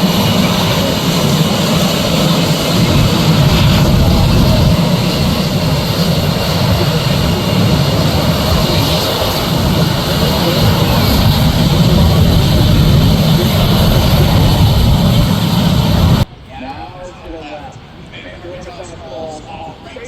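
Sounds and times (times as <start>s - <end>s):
aircraft engines roaring: 0.0s - 20.0s.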